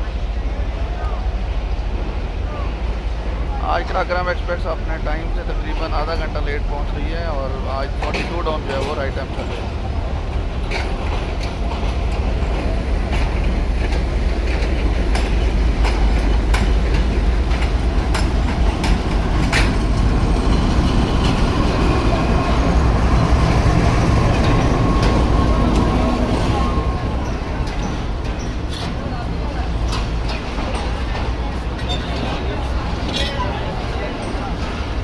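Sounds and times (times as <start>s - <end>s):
train rumbling: 0.0s - 35.0s
wheels clicking over rail joints: 7.9s - 35.0s.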